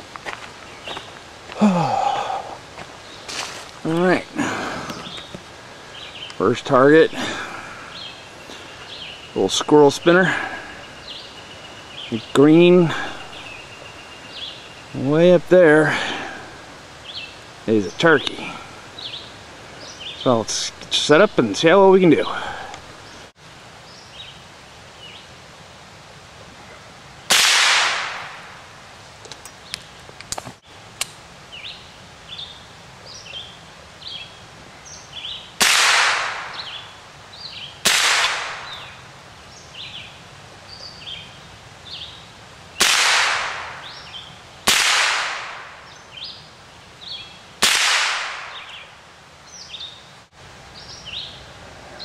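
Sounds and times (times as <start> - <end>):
rifle shots with echo: 27.3 - 28.4, 35.6 - 36.6, 37.8 - 38.7, 42.8 - 43.8, 44.7 - 45.8, 47.6 - 48.7.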